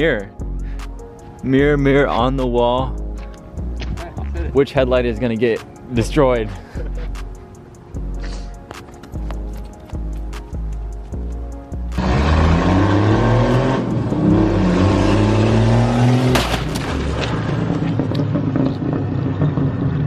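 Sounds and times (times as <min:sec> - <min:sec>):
engine accelerating hard: 0:12.0 - 0:20.0
sharp crash of impact: 0:16.1 - 0:17.9.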